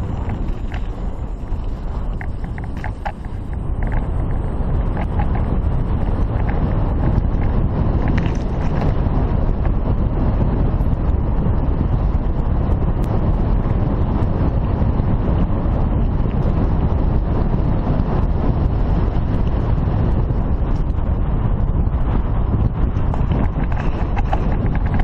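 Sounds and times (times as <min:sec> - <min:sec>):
mountain bike rattling on dirt: 0:00.0 - 0:25.0
wind on camera microphone: 0:00.0 - 0:25.0
small clicks: 0:04.9 - 0:05.5.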